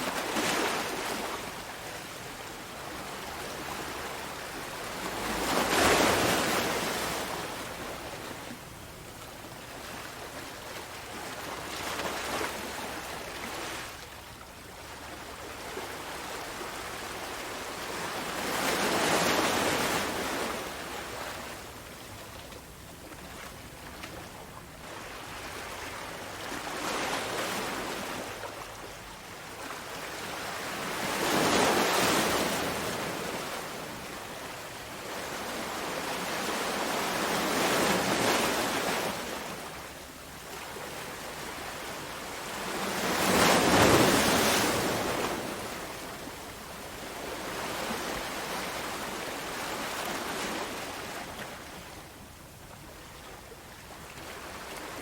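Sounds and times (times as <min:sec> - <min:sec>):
ocean waves breaking: 0:00.0 - 0:08.6, 0:40.5 - 0:51.9.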